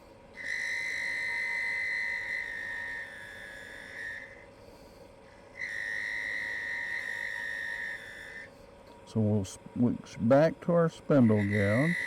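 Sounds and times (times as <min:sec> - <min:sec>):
lathe low hum: 0:00.0 - 0:12.0
lathe tool cutting wood whine: 0:00.4 - 0:04.4, 0:05.6 - 0:08.5, 0:11.1 - 0:12.0.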